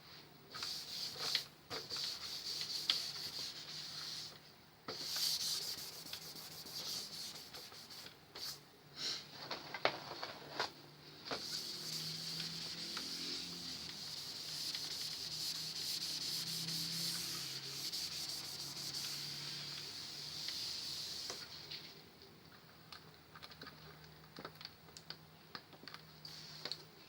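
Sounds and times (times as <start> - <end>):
rubbing hiss: 0.6 - 4.4, 5.0 - 8.6, 11.4 - 21.7.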